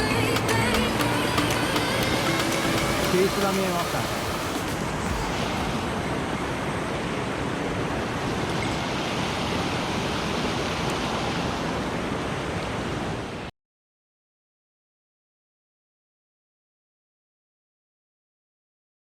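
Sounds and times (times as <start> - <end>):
mountain stream rushing: 0.0 - 13.5.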